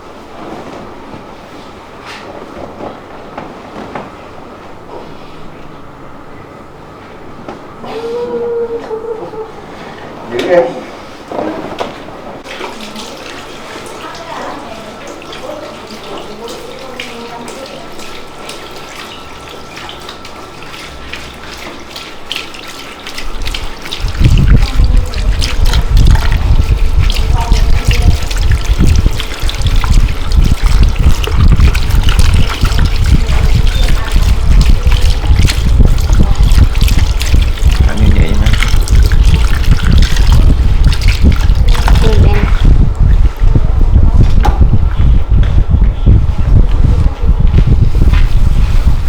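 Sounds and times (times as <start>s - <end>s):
tap water splashing into basin: 11.3s - 43.4s
heavy low rumble: 24.0s - 49.0s.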